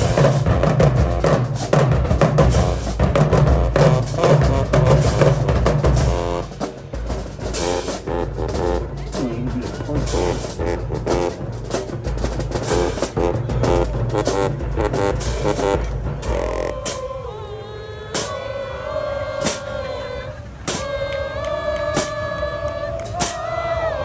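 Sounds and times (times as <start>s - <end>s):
steady drum beat: 0.0s - 17.2s, 18.2s - 18.4s, 19.4s - 19.7s, 20.7s - 21.0s, 22.0s - 22.2s, 23.0s - 23.5s
marching band horns: 0.0s - 24.0s.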